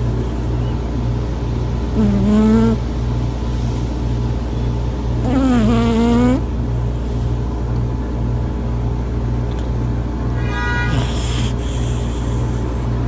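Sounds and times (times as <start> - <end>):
low buzzing hum: 0.0 - 13.0
cat snoring: 1.9 - 2.8, 5.2 - 6.4, 10.4 - 12.9.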